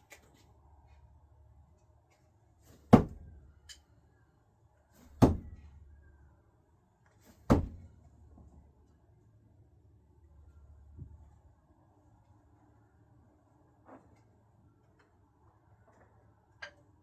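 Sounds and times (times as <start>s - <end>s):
screwdrivers thunking into target: 2.7s - 3.4s, 5.0s - 5.6s, 7.4s - 7.9s.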